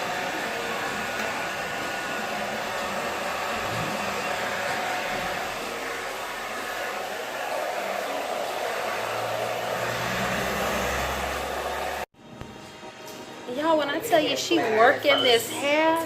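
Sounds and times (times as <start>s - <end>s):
hair dryer blowing: 0.0s - 12.1s.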